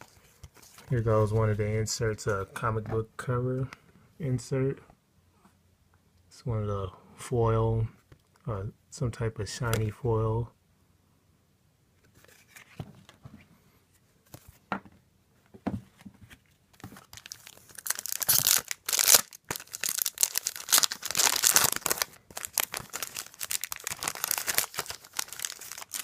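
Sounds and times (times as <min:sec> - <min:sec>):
foil wrapper tearing and crinkling: 0:17.1 - 0:26.0.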